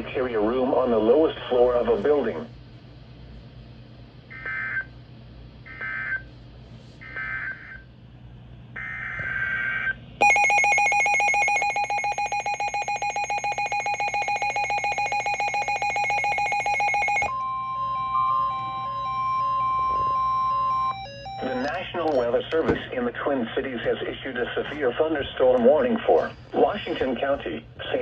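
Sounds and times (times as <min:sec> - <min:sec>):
harsh two-tone attention signal: 0:10.2 - 0:21.8.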